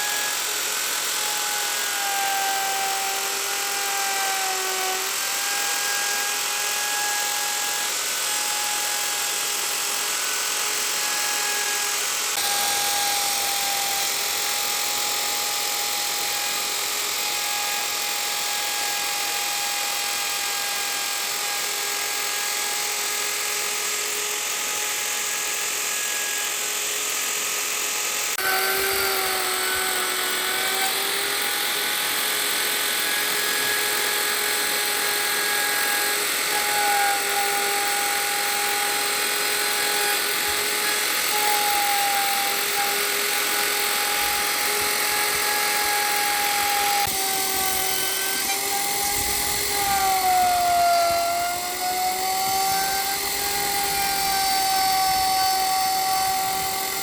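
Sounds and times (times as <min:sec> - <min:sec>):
power tool motor whining: 0:00.0 - 0:57.0.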